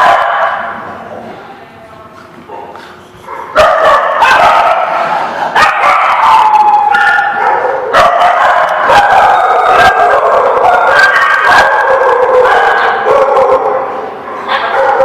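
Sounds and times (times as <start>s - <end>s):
dogs barking: 0.0s - 1.3s, 2.4s - 15.0s
dogs howling and whining: 3.4s - 15.0s.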